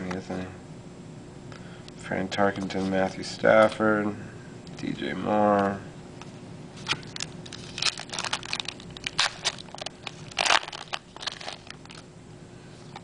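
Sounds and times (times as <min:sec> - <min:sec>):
cards and wrapper crinkling: 0:06.8 - 0:12.0.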